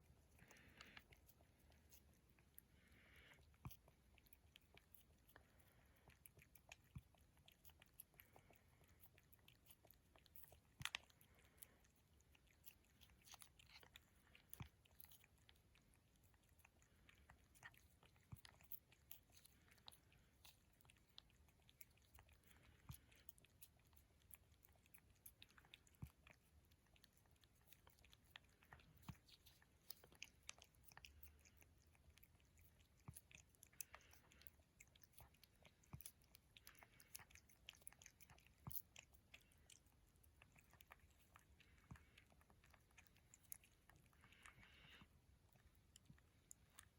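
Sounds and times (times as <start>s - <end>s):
cat chewing clicks: 3.4s - 44.5s.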